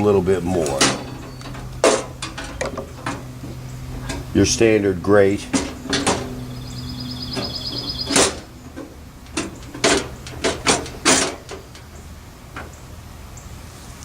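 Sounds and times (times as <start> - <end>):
low hum with high whine: 0.0 - 14.0
metal parts knocking and clacking: 0.6 - 3.2, 9.3 - 11.9.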